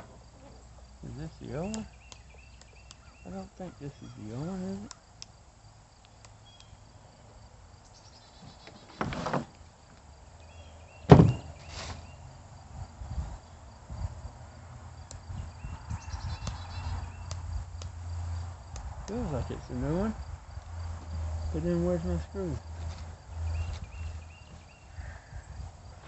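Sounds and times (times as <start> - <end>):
crickets chirping: 0.0 - 26.0
sharp knock: 11.1 - 11.5.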